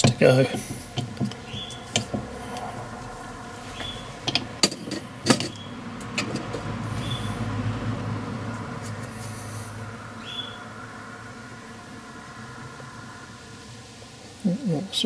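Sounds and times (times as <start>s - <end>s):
low scraping rumble: 0.0s - 15.0s
metal tools knocking and clinking: 4.3s - 5.6s.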